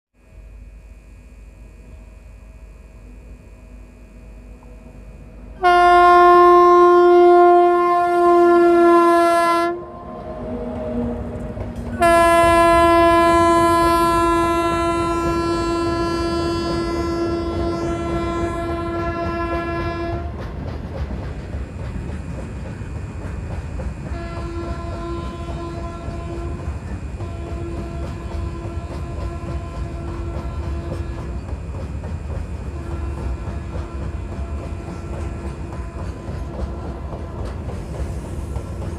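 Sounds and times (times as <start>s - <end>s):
freight train rumbling past: 1.6s - 38.9s
locomotive horn blasts: 3.6s - 20.4s, 24.0s - 31.6s, 32.6s - 37.7s.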